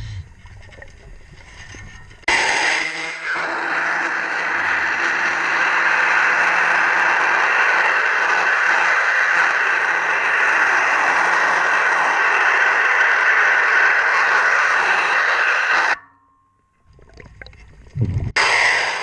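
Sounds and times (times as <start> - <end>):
underwater propeller scraping: 0.3 - 3.8.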